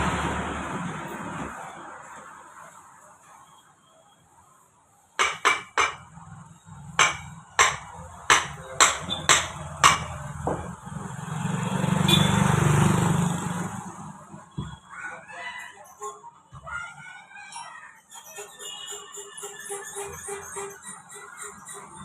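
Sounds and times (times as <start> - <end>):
sharp knocks: 5.2 - 6.1, 7.0 - 10.8.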